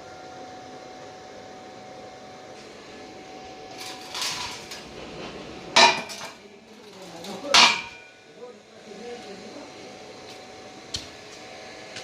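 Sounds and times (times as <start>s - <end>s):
steel tube scraping clatter: 3.7s - 8.1s
sharp metal clank: 7.5s - 8.2s.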